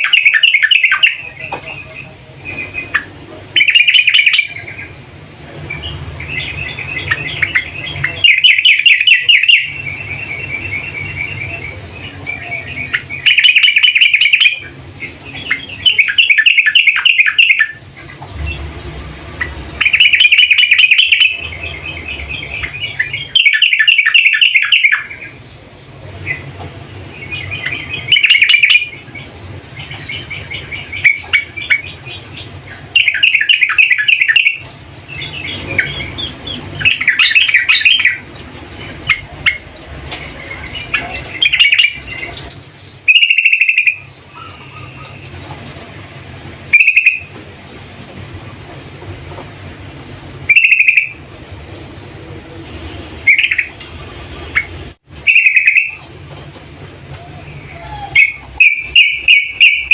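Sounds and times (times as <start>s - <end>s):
bird chattering song: 0.0s - 59.9s.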